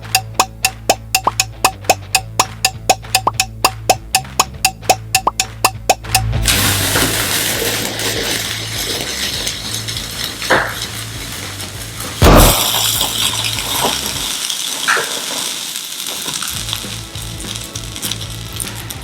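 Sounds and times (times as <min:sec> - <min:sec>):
steady hiss: 0:06.5 - 0:19.0
loud bang: 0:12.2 - 0:13.1.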